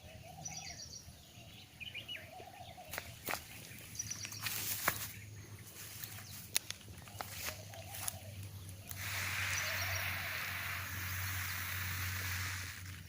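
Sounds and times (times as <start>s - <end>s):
birds chirping: 0.0s - 13.0s
snake rasping hiss: 7.2s - 13.0s.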